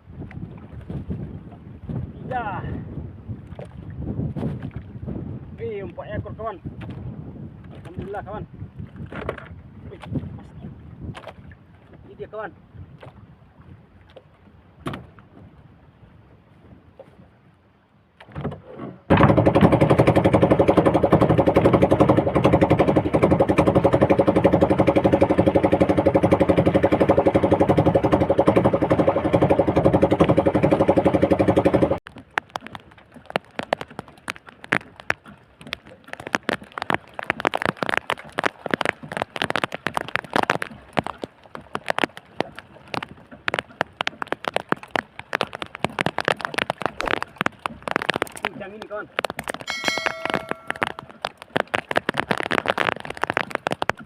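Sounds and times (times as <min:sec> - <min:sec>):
crackling and tapping: 0:32.1 - 0:54.0.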